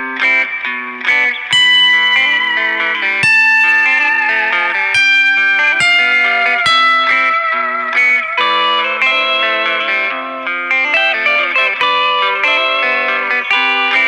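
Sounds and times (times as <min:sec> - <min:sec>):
guitar with effects melody: 0:00.0 - 0:14.0.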